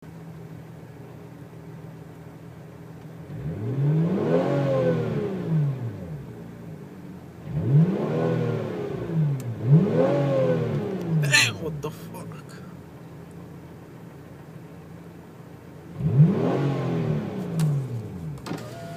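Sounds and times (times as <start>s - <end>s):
car engine idling and revving: 0.0s - 18.9s.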